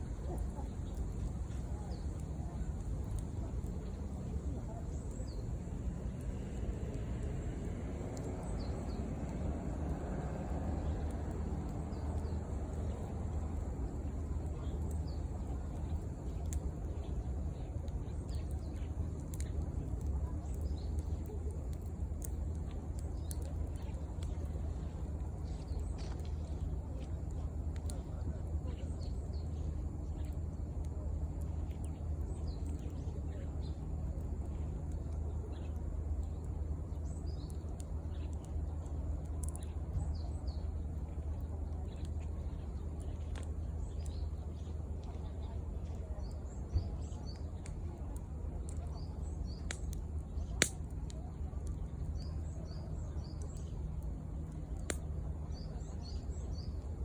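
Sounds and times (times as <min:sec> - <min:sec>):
low rumble: 0:00.0 - 0:28.4
campfire crackling: 0:00.0 - 0:57.0
small birds chirping: 0:00.0 - 0:57.0
steady low rumble: 0:00.0 - 0:57.0.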